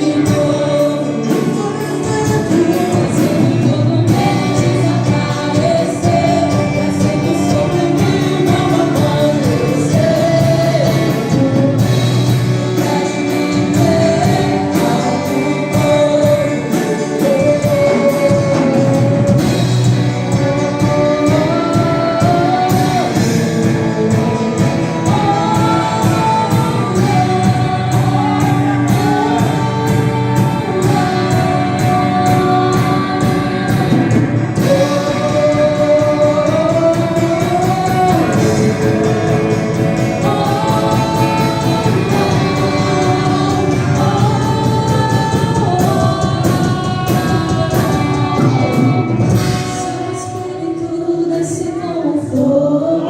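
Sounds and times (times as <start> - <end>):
band with steady drum beat: 0.0 - 53.0
voices singing together: 0.0 - 53.0.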